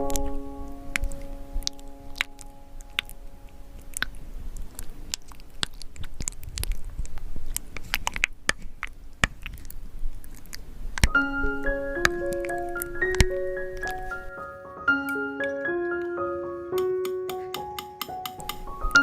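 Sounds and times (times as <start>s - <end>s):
keyboard melody: 0.0s - 4.2s, 11.1s - 19.0s.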